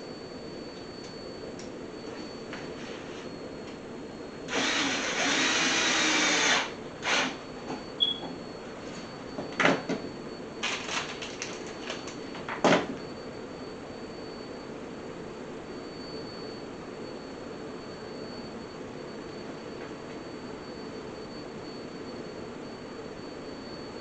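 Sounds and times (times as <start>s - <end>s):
power drill running: 4.5s - 7.4s.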